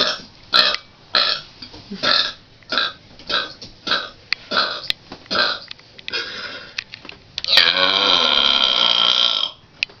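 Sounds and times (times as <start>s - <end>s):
child burping: 7.5s - 9.6s.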